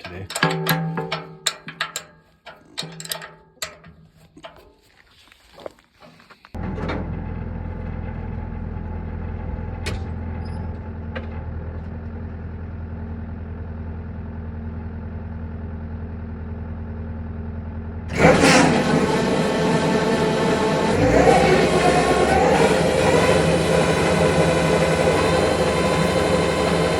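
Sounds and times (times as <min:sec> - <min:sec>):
skid steer engine idling: 0:06.5 - 0:26.9.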